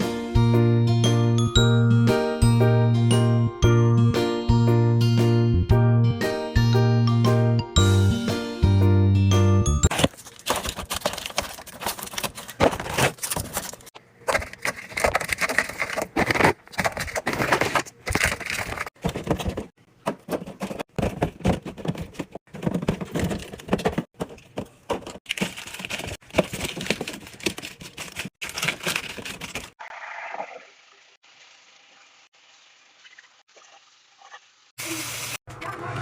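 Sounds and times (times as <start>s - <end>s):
snack packets crinkling: 9.9s - 18.9s, 25.2s - 29.8s
items clicking and clacking: 9.9s - 29.8s.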